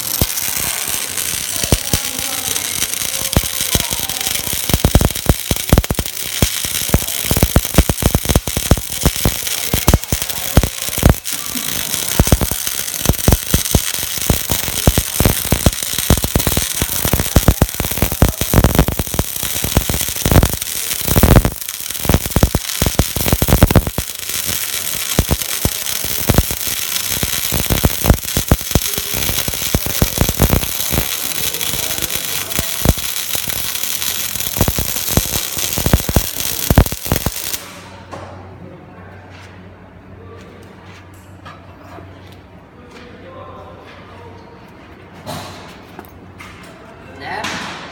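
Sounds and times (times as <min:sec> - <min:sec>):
arc welding crackle: 0:00.0 - 0:37.9.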